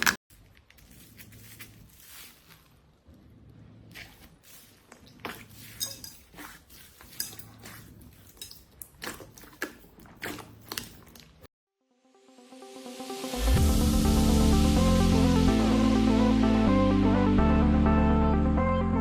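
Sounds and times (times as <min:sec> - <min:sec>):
electronic music: 0:12.0 - 0:19.0.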